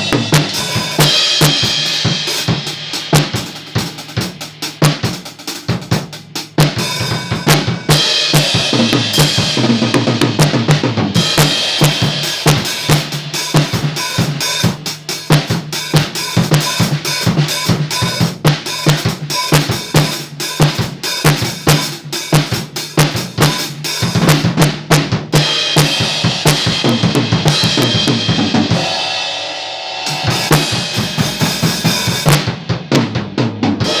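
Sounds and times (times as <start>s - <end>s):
cymbals ringing: 0.0s - 2.3s
bass drum: 0.0s - 29.2s, 30.1s - 34.0s
snare drum: 0.0s - 29.4s, 30.0s - 34.0s.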